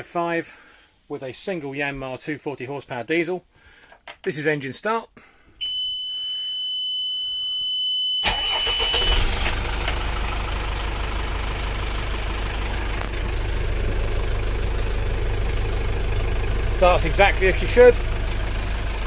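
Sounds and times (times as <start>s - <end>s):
diesel engine cranking and catching: 8.2s - 19.0s
diesel engine idling: 8.2s - 19.0s.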